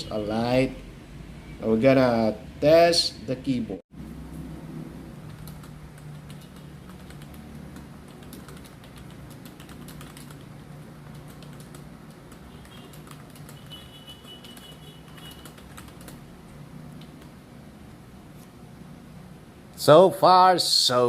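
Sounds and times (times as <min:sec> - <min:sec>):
keyboard typing clicks: 0:05.2 - 0:16.2.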